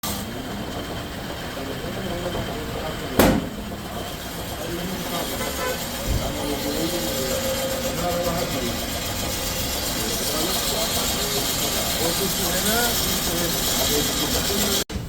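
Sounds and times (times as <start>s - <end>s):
workshop machine noise: 0.0s - 15.0s
faint voices: 0.3s - 14.9s
loud sharp knock: 3.2s - 3.6s.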